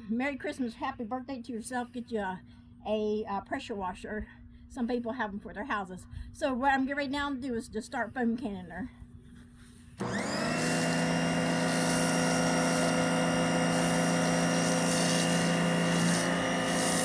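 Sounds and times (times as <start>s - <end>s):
pressure washer running: 10.0s - 17.0s.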